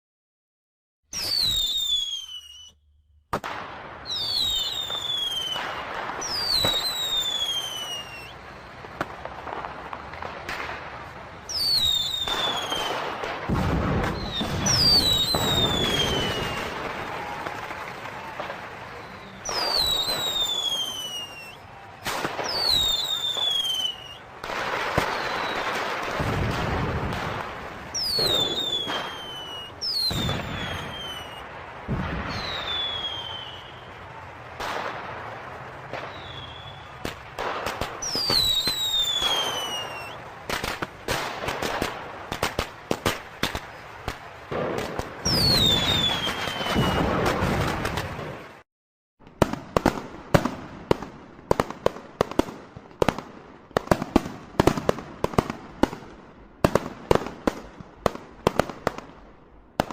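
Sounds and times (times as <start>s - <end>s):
firework whistles: 1.1s - 2.9s, 4.0s - 10.6s, 11.4s - 35.0s, 35.9s - 44.2s, 44.8s - 48.1s
firecracker pops: 1.1s - 10.8s, 11.5s - 35.2s, 35.9s - 48.5s
firework bangs and crackling: 1.1s - 59.9s.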